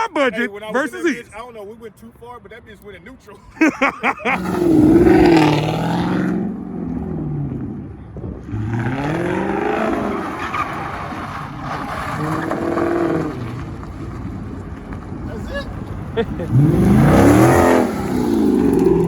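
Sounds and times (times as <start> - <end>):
car engine revving hard: 4.3 - 13.9, 16.4 - 19.0.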